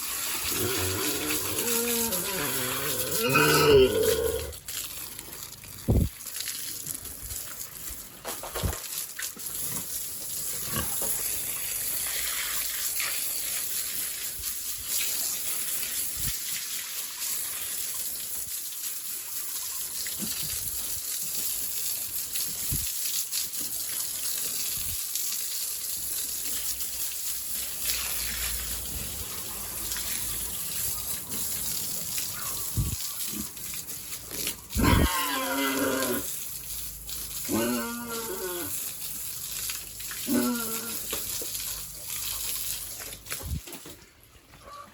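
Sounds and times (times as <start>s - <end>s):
water spraying from a hose: 0.0s - 44.4s
loud pitched animal calls: 0.4s - 4.6s, 34.8s - 36.2s.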